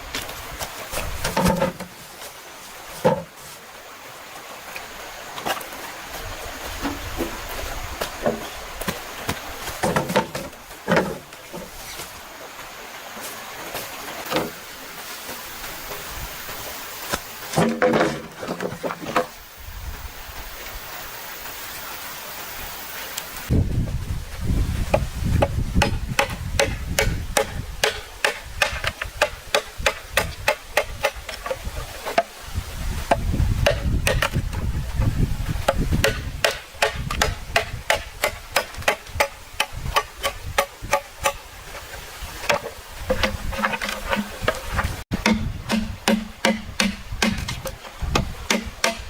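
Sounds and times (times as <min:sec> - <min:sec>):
tool striking wood: 0:25.8 - 0:31.2, 0:42.5 - 0:49.0
heavy low thumps: 0:45.1 - 0:48.8.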